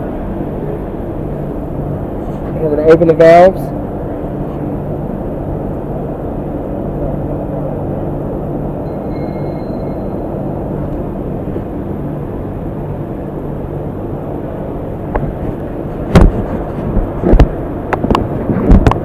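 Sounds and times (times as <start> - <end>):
sharp clicks and knocks: 16.1 - 19.0.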